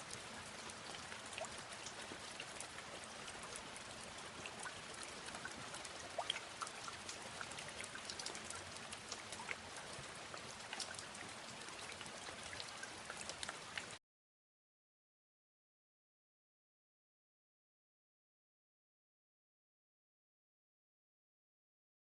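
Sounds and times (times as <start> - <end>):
steady rain falling: 0.0 - 14.0.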